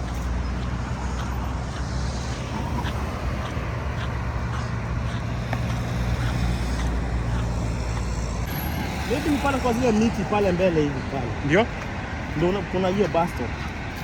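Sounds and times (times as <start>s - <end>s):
low engine hum: 0.0s - 14.0s
road noise: 0.0s - 14.0s.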